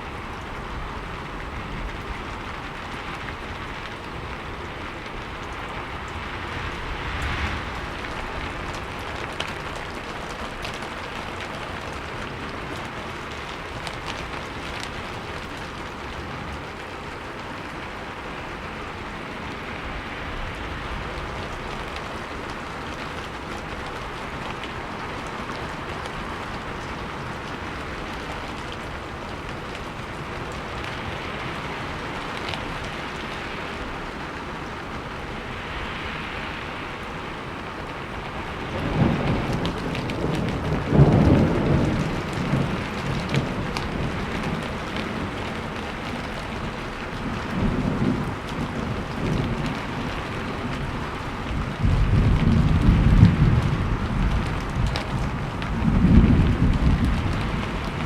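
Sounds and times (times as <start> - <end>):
steady rain falling: 0.0 - 58.0
thunder rumbling: 0.0 - 58.0.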